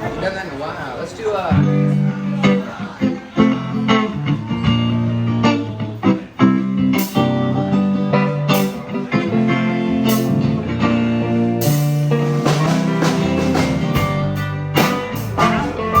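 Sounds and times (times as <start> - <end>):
blues guitar playing: 1.5 - 16.0.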